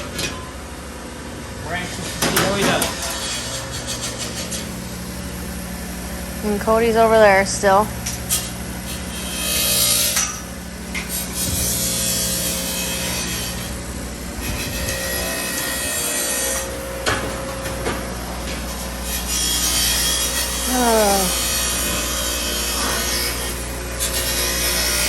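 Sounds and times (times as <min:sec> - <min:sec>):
steady low hum: 0:00.0 - 0:25.0
rasping sawing scrape: 0:02.8 - 0:05.2, 0:08.3 - 0:16.8, 0:18.4 - 0:25.0.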